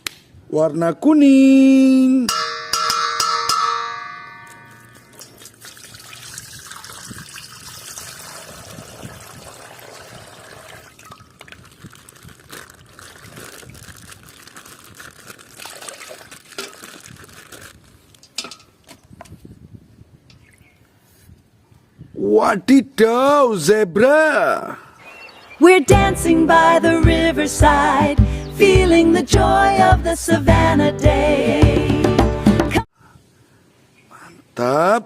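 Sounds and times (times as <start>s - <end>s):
plastic packaging crinkling: 11.0s - 18.3s.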